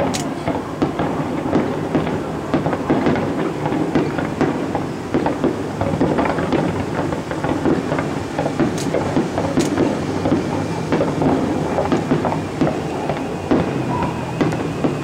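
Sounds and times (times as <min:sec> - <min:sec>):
sharp high cracks: 0:00.0 - 0:01.7, 0:05.2 - 0:15.0
fireworks bangs and crackles: 0:00.0 - 0:15.0.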